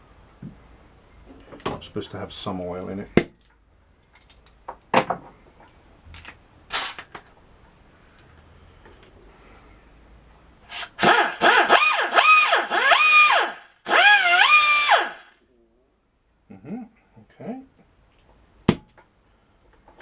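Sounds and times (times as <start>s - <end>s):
air hiss: 6.7s - 7.1s, 10.7s - 15.2s
pneumatic die grinder whine: 10.7s - 15.3s.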